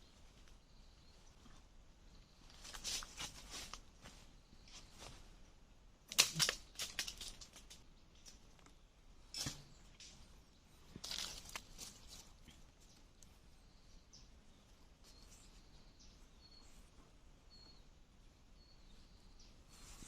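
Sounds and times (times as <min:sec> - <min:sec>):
short rustles and clicks: 0:06.1 - 0:10.3.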